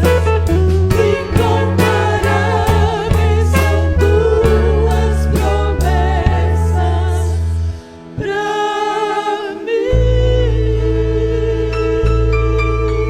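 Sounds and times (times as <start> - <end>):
bass and drums: 0.0 - 7.8
vocal group singing: 0.0 - 13.0.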